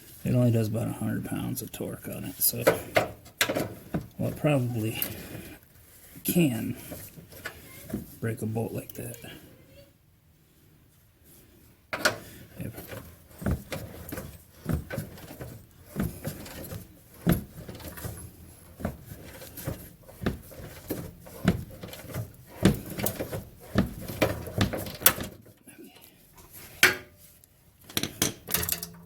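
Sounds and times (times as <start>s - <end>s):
metal tools knocking and clanking: 27.9s - 29.0s.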